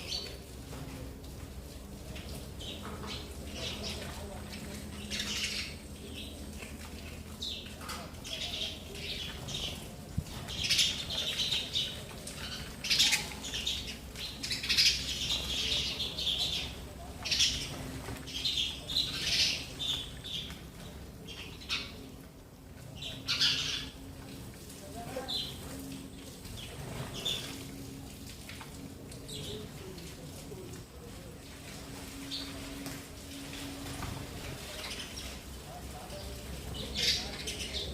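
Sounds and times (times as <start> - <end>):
sparrows chirping: 0.0 - 0.7, 1.7 - 28.0, 29.2 - 30.6, 32.2 - 37.9.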